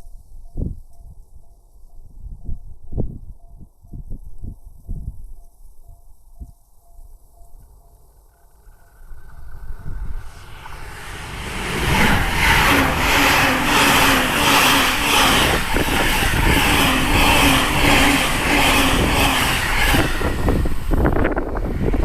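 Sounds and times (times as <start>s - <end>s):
electric train passing at speed: 7.2s - 22.0s.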